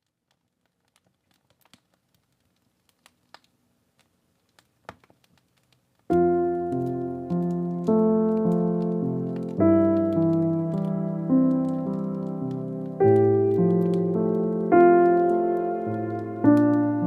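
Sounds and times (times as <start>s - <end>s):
fire snap: 0.0s - 17.0s
fireplace crackling: 0.0s - 17.0s
soft piano music: 6.1s - 17.0s.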